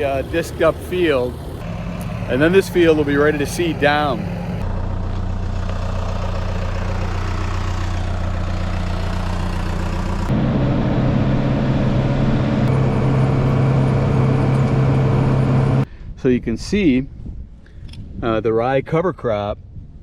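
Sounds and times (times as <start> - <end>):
tractor engine running: 0.0 - 15.9.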